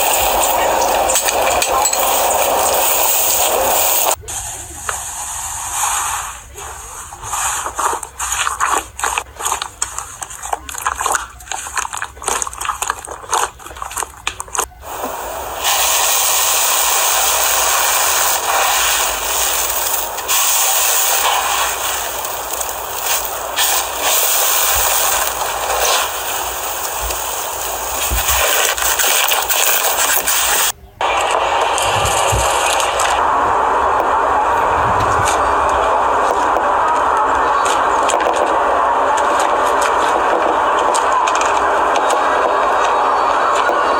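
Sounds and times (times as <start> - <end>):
steady hiss: 0.0 - 9.2, 14.8 - 43.9
slime crackling and popping: 7.6 - 14.8, 15.7 - 33.2.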